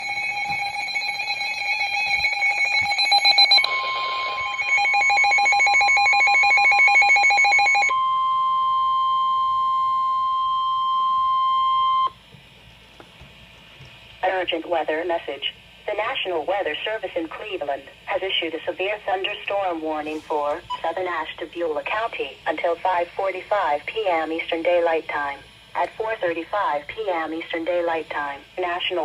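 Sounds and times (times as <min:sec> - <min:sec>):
rapidly pulsing alarm beep: 0:00.0 - 0:12.2, 0:20.7 - 0:21.1
steady alarm tone: 0:00.0 - 0:12.3.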